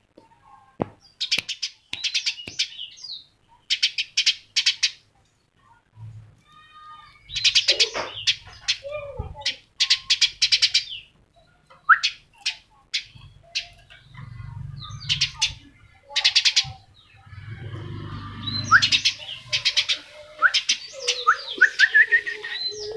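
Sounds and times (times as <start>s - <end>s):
upward-sweeping bird chirps: 7.1s - 22.9s
bird calling in harsh rapid notes: 13.0s - 22.9s.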